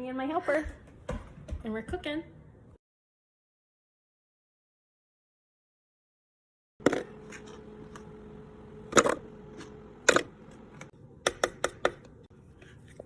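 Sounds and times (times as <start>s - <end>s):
faint steady hum: 6.8s - 13.0s.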